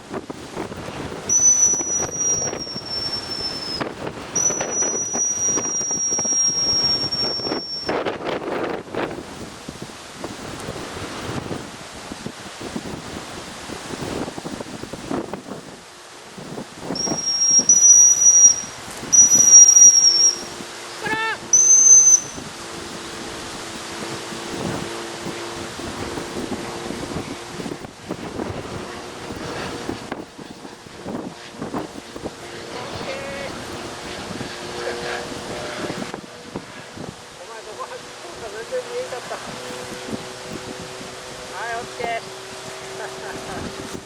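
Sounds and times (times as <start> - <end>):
wind buffeting microphone: 0.0 - 44.0
long high-pitched whines: 0.9 - 9.8, 13.9 - 44.0
dog whistle blasts: 1.3 - 3.8, 4.4 - 8.0, 17.0 - 20.5, 21.5 - 22.4
falling squeal: 1.3 - 3.8, 4.4 - 8.0, 17.0 - 20.5, 21.5 - 22.4.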